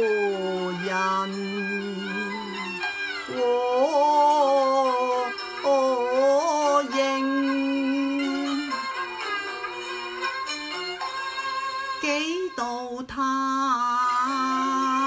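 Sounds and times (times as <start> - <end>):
opera singing: 0.0 - 9.0, 12.0 - 15.0
traditional instrumental accompaniment: 0.0 - 15.0.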